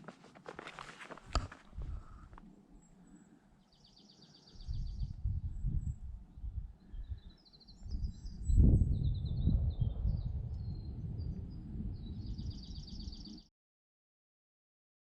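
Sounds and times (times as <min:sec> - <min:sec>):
wind buffeting microphone: 0:01.2 - 0:02.4, 0:04.5 - 0:13.4.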